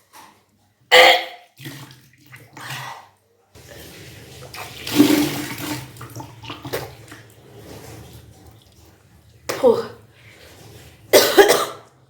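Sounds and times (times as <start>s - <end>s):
water gushing and splashing: 3.6s - 11.6s.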